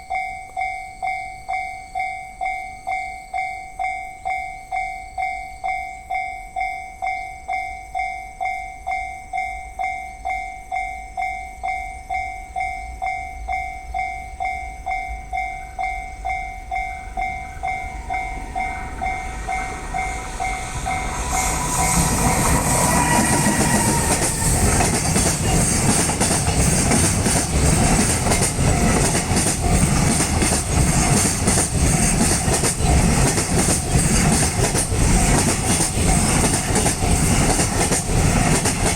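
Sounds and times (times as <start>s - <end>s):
level-crossing warning bell: 0.0s - 38.9s
train passing: 12.1s - 38.9s.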